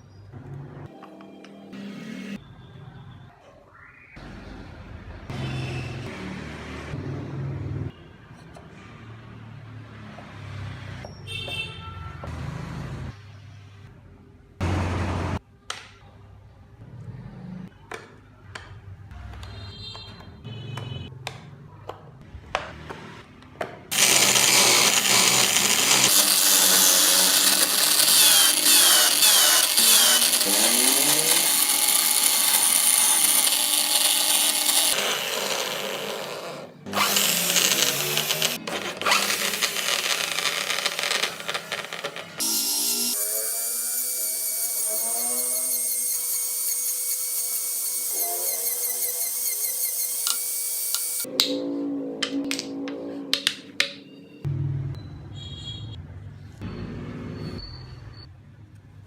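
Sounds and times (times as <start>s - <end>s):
power tool grinding into wood: 23.9s - 51.2s.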